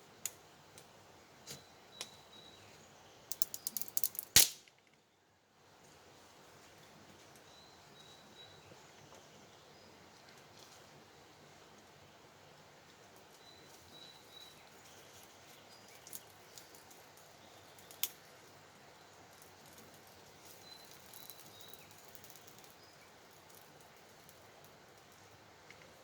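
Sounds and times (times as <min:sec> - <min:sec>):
birds chirping: 0:01.3 - 0:04.0, 0:13.3 - 0:23.3
fire snap: 0:03.3 - 0:04.8
campfire crackling: 0:03.3 - 0:04.9.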